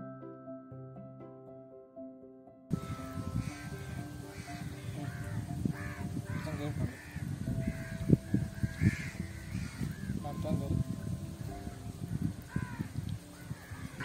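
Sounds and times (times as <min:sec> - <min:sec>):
background music: 0:00.0 - 0:14.0
crows cawing: 0:02.8 - 0:10.4, 0:11.4 - 0:14.0.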